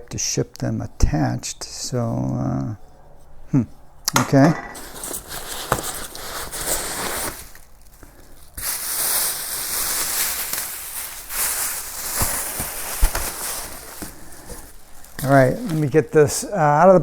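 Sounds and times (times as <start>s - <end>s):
packaging rustling and crinkling: 4.8s - 17.0s.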